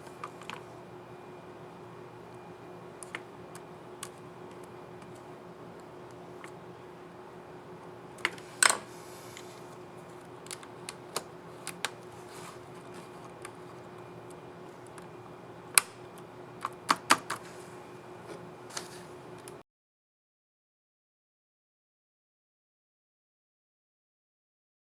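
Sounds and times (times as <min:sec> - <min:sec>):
faint steady hum: 0:00.0 - 0:19.6.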